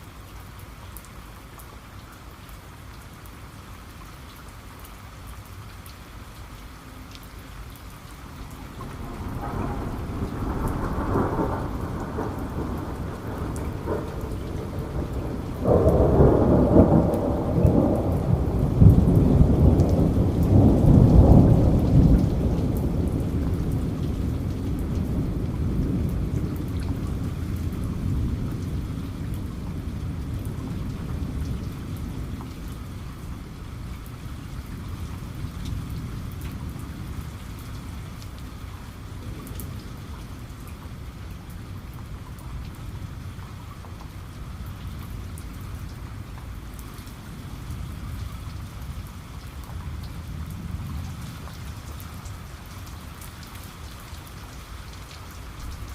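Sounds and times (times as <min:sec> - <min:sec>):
steady rain falling: 0:00.0 - 0:55.9
thunder rumbling: 0:08.3 - 0:52.7.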